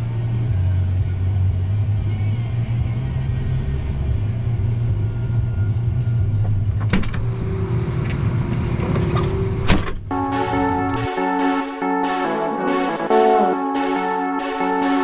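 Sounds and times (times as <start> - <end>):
combine engine drone: 0.0 - 9.5, 10.1 - 12.0.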